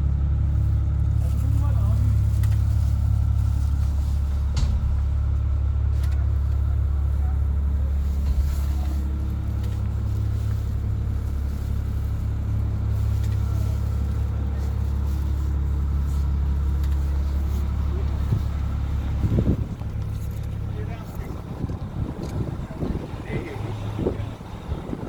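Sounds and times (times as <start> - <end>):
excavator diesel engine running: 0.0 - 25.0
faint clicks: 16.6 - 18.6.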